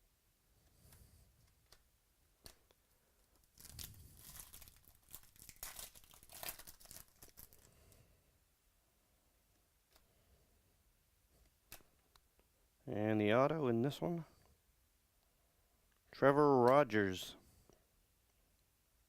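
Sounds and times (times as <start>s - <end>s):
wrapper tearing and crinkling: 3.3s - 7.7s.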